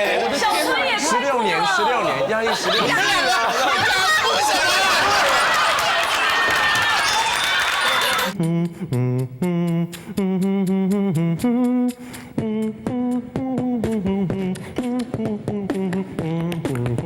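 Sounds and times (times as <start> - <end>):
man beatboxing and humming: 8.4 - 17.0.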